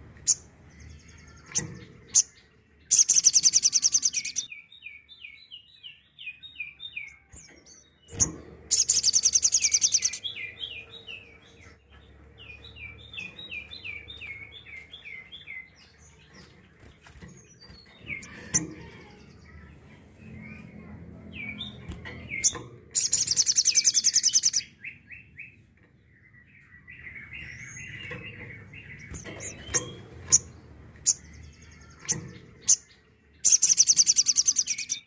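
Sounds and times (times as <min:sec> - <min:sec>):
bird chirping: 0:00.0 - 0:35.0
high-pitched bird trill: 0:00.2 - 0:04.6, 0:08.1 - 0:11.8, 0:17.5 - 0:24.9, 0:27.0 - 0:35.0.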